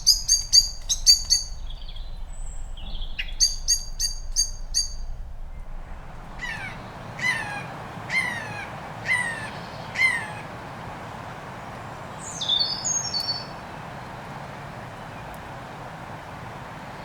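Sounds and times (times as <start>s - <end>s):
large bird harsh calls: 0.0s - 10.7s
songbird high chirps: 0.0s - 10.8s, 12.0s - 15.7s.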